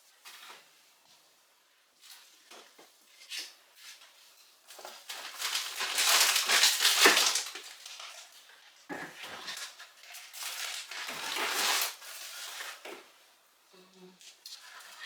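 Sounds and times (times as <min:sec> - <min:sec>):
rustling packaging: 0:02.0 - 0:13.2.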